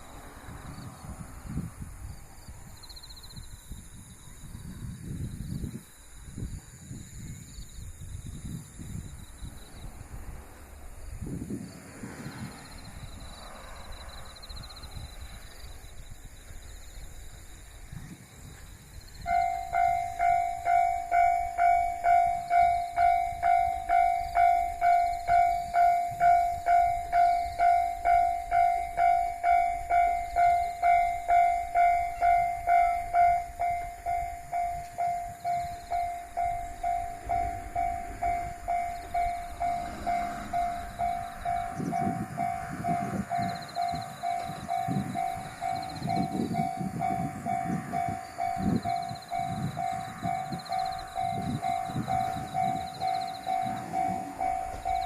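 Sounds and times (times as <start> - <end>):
level crossing warning bell ringing: 19.2 - 55.0.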